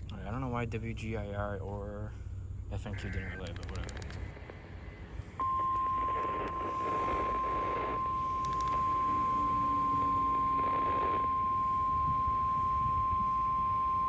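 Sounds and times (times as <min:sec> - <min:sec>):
steady alarm tone: 0:05.4 - 0:14.0.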